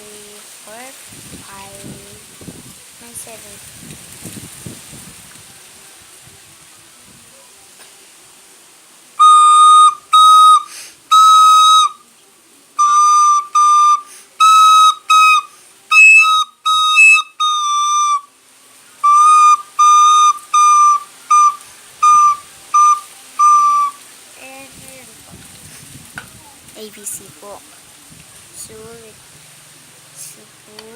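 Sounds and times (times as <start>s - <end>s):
whistle toots: 9.2s - 12.0s, 12.8s - 18.3s, 19.0s - 24.0s.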